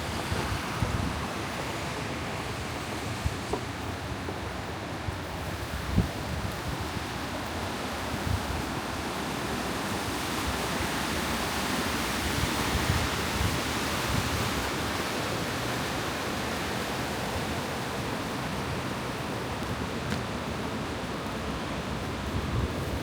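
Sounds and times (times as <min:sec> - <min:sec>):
snowstorm wind hissing: 0:00.0 - 0:23.0
wind buffeting microphone: 0:00.0 - 0:23.0.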